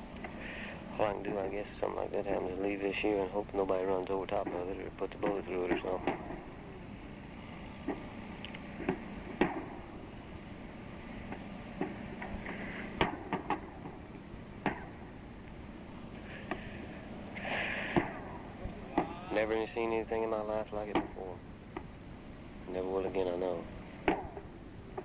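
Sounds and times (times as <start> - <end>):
low mains hum: 0.0 - 25.0
mortar fire: 0.0 - 25.0
tape hiss: 0.0 - 25.0
distant explosions: 16.2 - 22.0.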